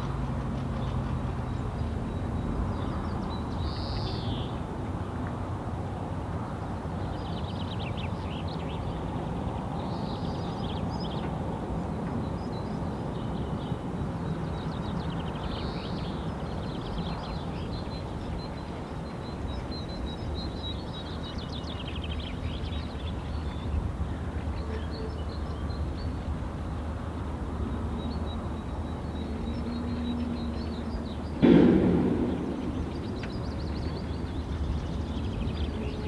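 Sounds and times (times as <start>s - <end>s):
low background rumble: 30.4s - 36.0s.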